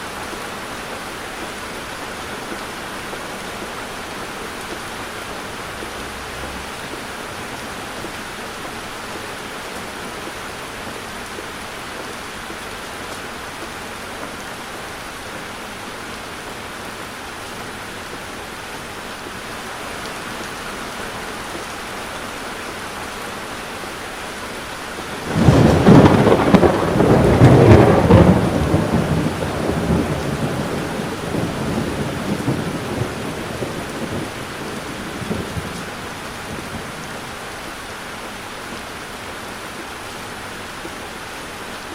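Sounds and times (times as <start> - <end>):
heavy rain on a car: 0.0 - 41.9
thunder clap and rumble: 25.2 - 37.4.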